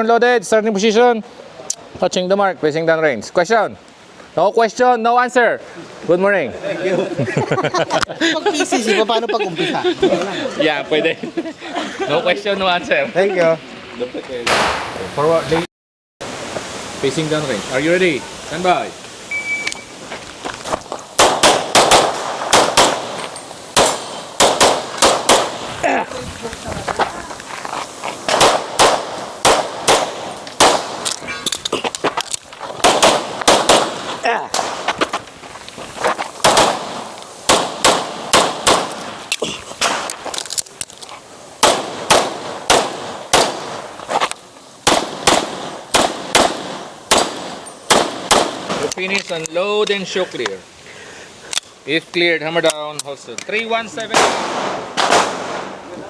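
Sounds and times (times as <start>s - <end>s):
gunshots: 14.4s - 15.0s, 21.2s - 25.7s, 28.3s - 31.1s, 32.8s - 34.9s, 36.4s - 39.0s, 41.6s - 43.9s, 44.8s - 48.9s, 54.1s - 55.8s
shot timer beep: 19.3s - 19.9s
pistol shots: 21.2s - 23.2s, 23.8s - 25.7s, 28.3s - 31.0s, 32.8s - 34.8s, 36.4s - 39.0s, 41.6s - 43.8s, 44.8s - 48.8s, 54.1s - 55.7s.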